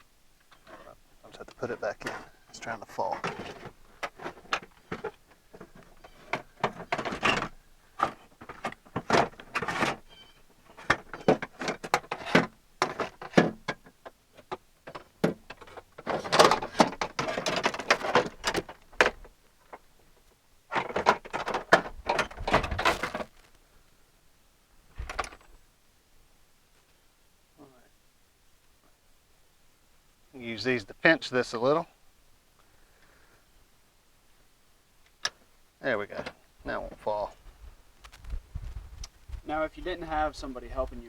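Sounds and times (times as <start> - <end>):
scraping and rattling: 0.6 - 19.9, 20.7 - 23.6.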